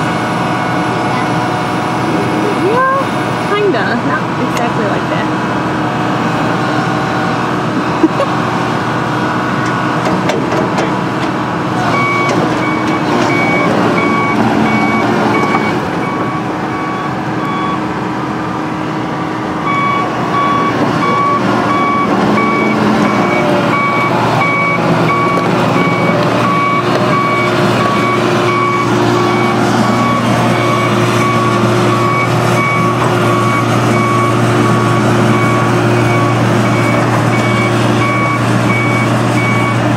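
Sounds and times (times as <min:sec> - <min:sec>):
excavator engine under load: 0:00.0 - 0:39.9
travel alarm beeping: 0:11.9 - 0:17.8, 0:19.6 - 0:39.8.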